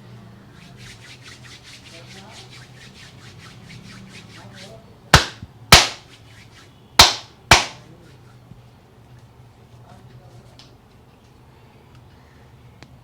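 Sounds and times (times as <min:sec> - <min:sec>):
sharp hand slaps: 0:05.2 - 0:06.0, 0:07.0 - 0:07.8
hands rubbing hair: 0:07.0 - 0:07.8.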